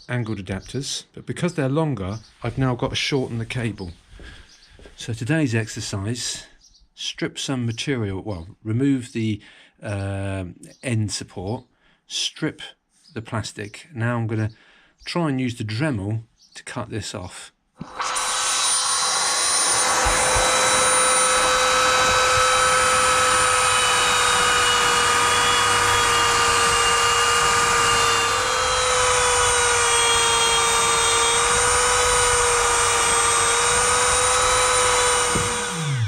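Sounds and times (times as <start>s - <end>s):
rotary tool cutting metal: 17.8s - 36.0s.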